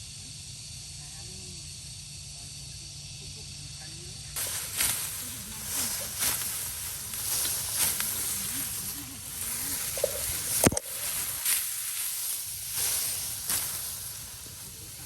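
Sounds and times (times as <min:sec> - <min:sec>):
swishing rustles: 0:04.4 - 0:15.0.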